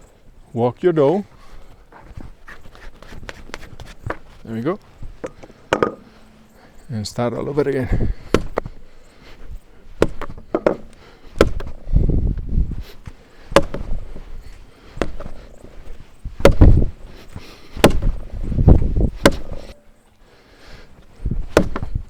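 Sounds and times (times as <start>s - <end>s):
dough slapping on work surface: 17.8s - 18.2s.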